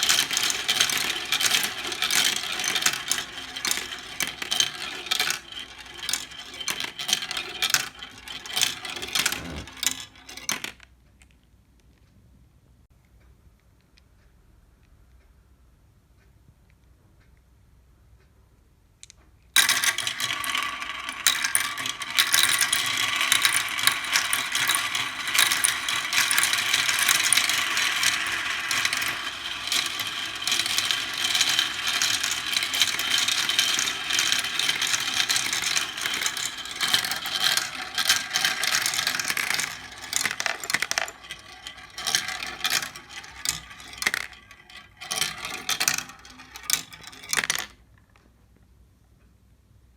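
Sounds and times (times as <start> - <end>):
glass marbles clattering: 0.0 - 10.5, 19.6 - 47.7.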